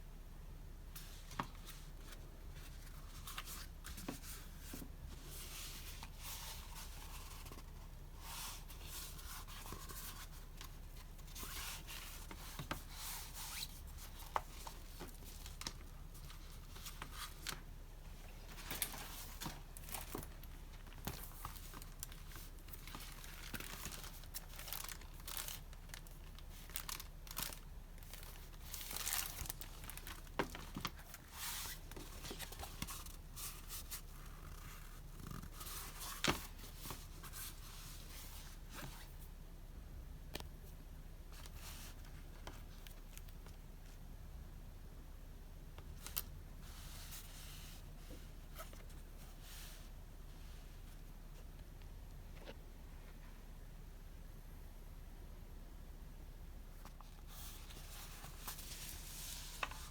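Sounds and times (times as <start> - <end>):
paper rustling and crinkling: 1.0 - 39.2, 56.8 - 59.9.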